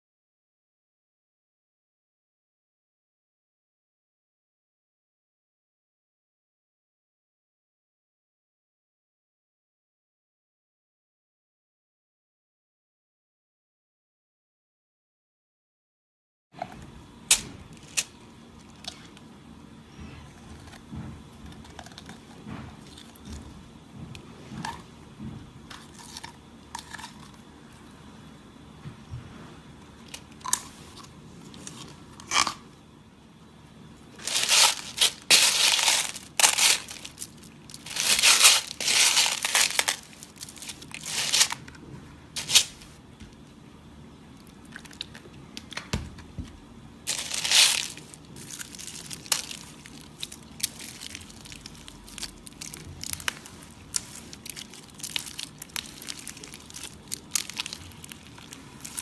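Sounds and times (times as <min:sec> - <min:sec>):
slime squishing by hand: 0:34.2 - 0:41.6, 0:47.1 - 0:59.0.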